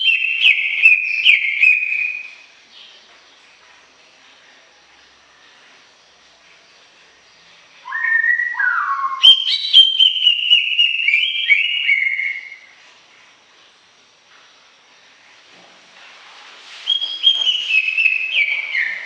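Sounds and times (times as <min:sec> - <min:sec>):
bird singing whistled phrase: 0:07.8 - 0:12.7, 0:16.8 - 0:19.0.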